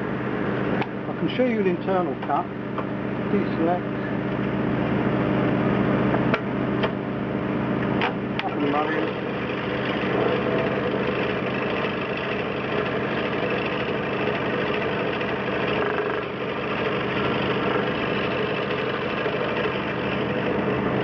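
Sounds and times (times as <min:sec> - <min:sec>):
scroll saw running: 0:08.4 - 0:21.0.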